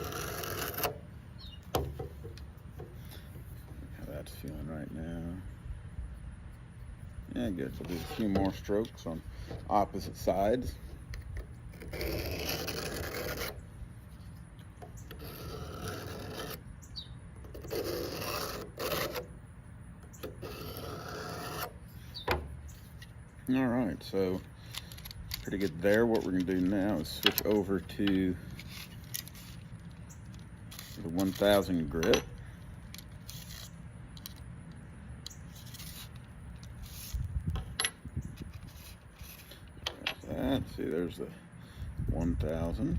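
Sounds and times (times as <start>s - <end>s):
steady low hum: 0.0s - 42.9s
metal parts scraping: 7.4s - 14.3s, 24.2s - 34.5s, 35.4s - 40.2s
knife rasping on sharpening rod: 7.7s - 8.7s, 15.1s - 16.7s, 17.6s - 19.3s, 20.4s - 21.8s.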